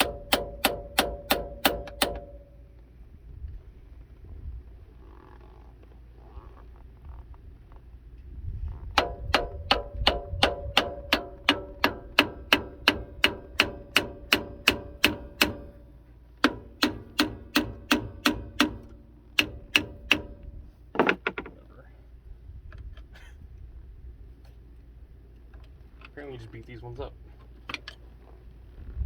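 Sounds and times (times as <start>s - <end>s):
hammer ringing on steel: 0.0s - 2.6s, 9.0s - 20.6s.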